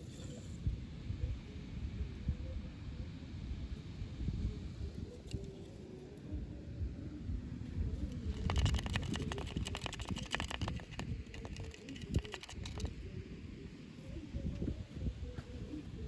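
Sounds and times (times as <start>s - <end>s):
small clicks and crackles: 8.0s - 13.1s.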